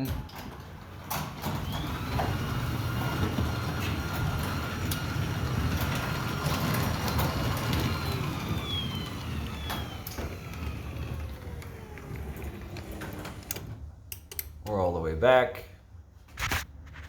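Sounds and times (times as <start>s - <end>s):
garage door opener running: 0.0s - 14.1s.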